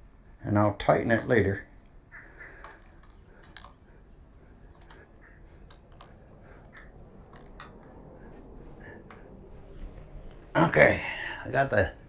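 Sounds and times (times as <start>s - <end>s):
low background hiss: 0.0s - 12.0s
light clicks and taps: 1.1s - 10.4s.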